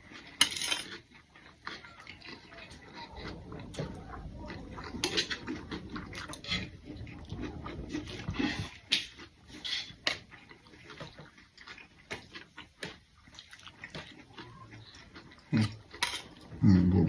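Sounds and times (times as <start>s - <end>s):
chewing and smacking: 0.0s - 17.0s
cutlery clinking on plates: 0.3s - 1.0s, 16.0s - 16.4s.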